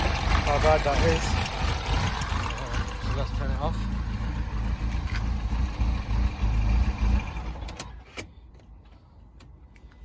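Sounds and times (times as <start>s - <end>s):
car engine idling roughly: 0.0s - 7.7s.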